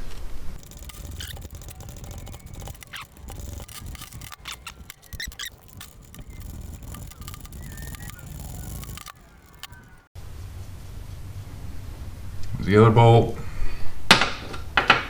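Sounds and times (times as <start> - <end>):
hand tools clicking on metal: 0.6 - 10.1
short squeaks: 0.6 - 10.1.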